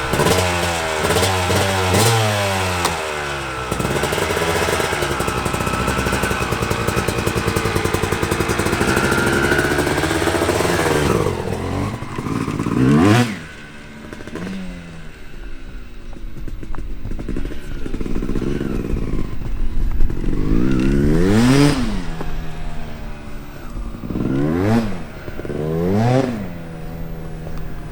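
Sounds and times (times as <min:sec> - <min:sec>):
two-stroke dirt bike engine revving: 0:00.0 - 0:27.9.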